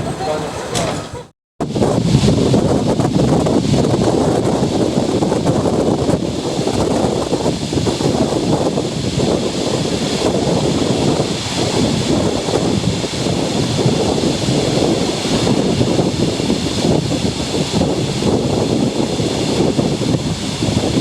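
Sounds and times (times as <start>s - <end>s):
train rumbling: 0.0s - 21.0s.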